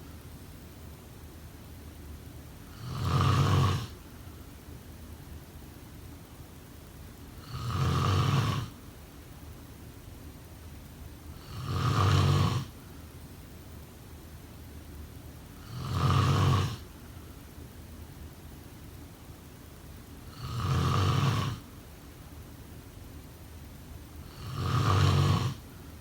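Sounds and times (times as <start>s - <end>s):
quiet steady hiss: 0.0s - 26.0s
person snoring: 2.7s - 4.0s, 7.4s - 8.7s, 11.4s - 12.7s, 15.6s - 16.8s, 20.3s - 21.6s, 24.3s - 25.6s.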